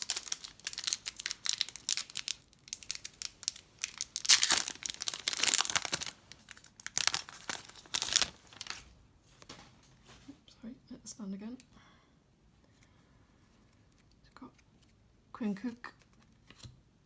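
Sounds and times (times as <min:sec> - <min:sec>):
plastic wrapper crinkling: 0:00.0 - 0:09.9.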